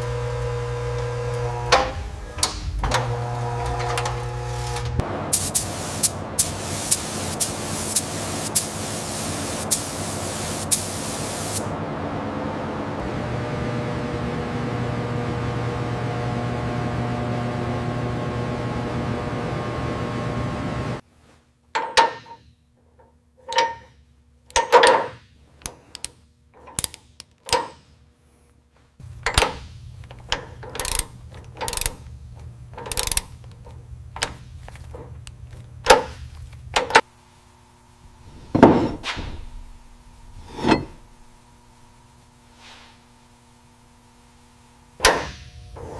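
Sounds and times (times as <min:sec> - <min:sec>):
steady hiss with low hum: 0:28.0 - 0:45.9.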